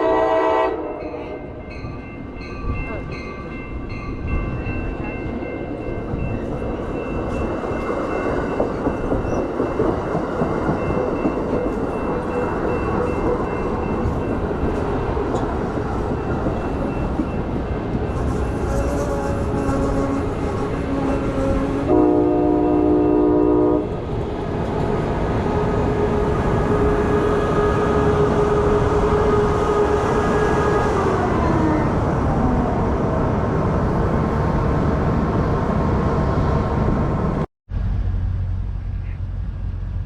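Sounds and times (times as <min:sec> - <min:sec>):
multi-note train horn: 0:00.0 - 0:01.6, 0:18.1 - 0:24.0
train rumbling past: 0:00.0 - 0:40.0.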